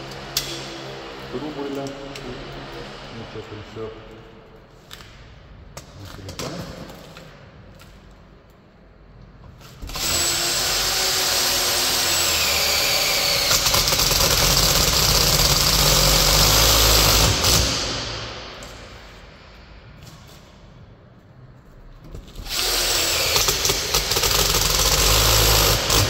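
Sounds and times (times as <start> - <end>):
power drill driving screw into metal: 22.4 - 26.0.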